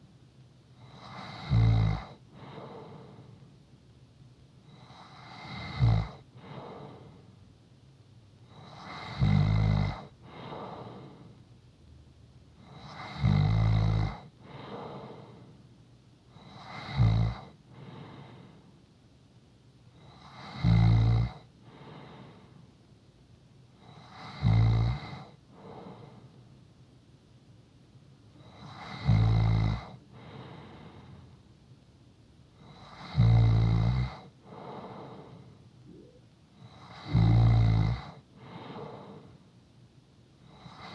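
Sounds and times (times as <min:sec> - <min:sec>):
quiet breath: 0:00.7 - 0:03.8, 0:04.6 - 0:07.6, 0:09.9 - 0:11.6, 0:14.1 - 0:16.8, 0:17.4 - 0:19.0, 0:21.4 - 0:23.0, 0:25.1 - 0:26.8, 0:28.3 - 0:31.6, 0:34.1 - 0:37.4, 0:38.0 - 0:40.9
person snoring: 0:36.8 - 0:39.2.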